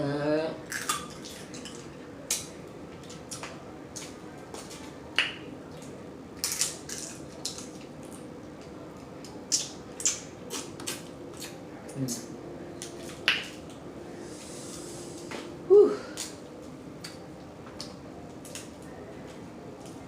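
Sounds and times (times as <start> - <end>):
crab shells cracking: 6.4 - 8.3
mouth smacking: 9.5 - 12.3.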